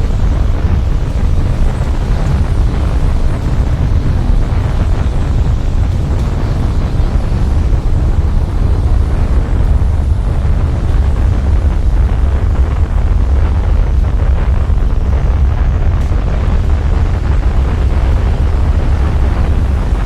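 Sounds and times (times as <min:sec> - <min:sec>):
deep heavy wind roar: 0:00.0 - 0:20.0.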